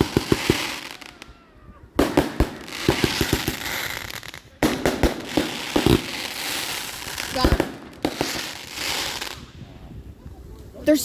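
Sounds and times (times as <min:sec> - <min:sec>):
fireworks bangs and crackles: 0:00.0 - 0:10.1.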